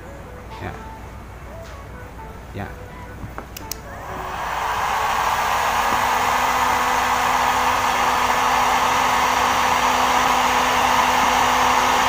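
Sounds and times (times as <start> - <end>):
faint motor hum: 0.0 - 12.0
heat gun blowing air: 4.0 - 12.0.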